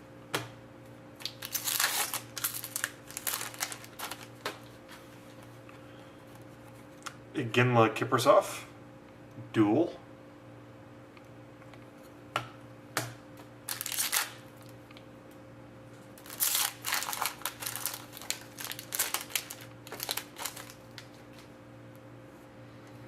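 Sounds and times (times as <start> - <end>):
faint electrical hum: 0.0 - 23.0
wrapper crinkling: 1.2 - 4.8, 13.7 - 14.9, 16.2 - 21.5
cards rustling: 1.2 - 5.5, 13.7 - 14.4, 16.2 - 21.5.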